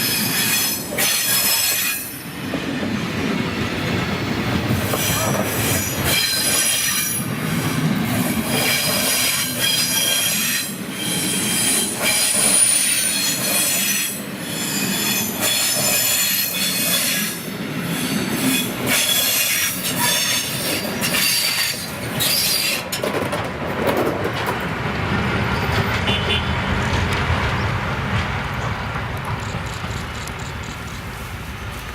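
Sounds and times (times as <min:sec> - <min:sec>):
train brakes squealing: 0:00.0 - 0:02.4, 0:04.9 - 0:07.3, 0:08.4 - 0:22.9
running train rumble: 0:00.0 - 0:31.9.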